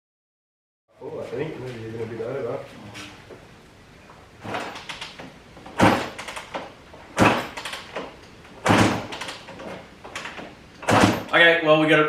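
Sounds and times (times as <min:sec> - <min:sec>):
motorcycle kickstart thump and rattle: 0:04.4 - 0:11.4.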